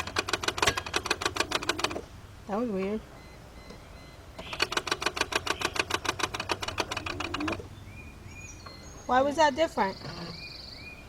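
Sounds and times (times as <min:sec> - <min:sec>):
car starter rapid clicking: 0:00.0 - 0:02.1, 0:04.4 - 0:07.7.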